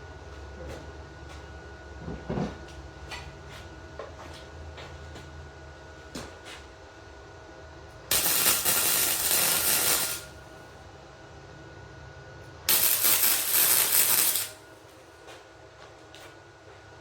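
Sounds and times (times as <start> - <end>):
welder hissing crackle: 8.1 - 10.4, 12.7 - 14.6.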